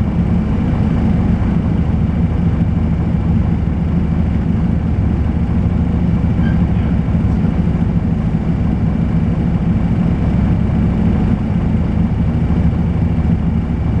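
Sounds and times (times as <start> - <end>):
bus diesel engine droning: 0.0 - 14.0.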